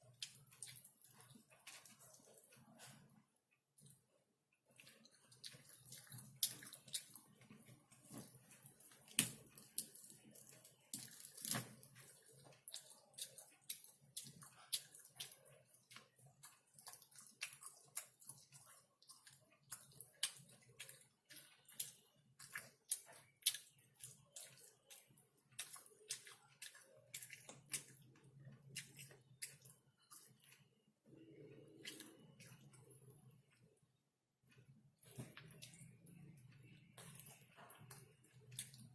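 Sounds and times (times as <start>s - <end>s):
wet chewing and lip smacks: 4.7s - 33.3s, 37.0s - 38.9s.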